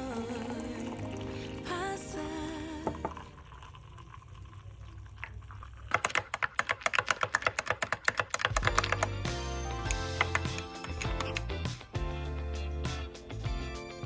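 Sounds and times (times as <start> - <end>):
fast sharp clicks: 5.9 - 11.9
background music with bass line: 8.7 - 14.0.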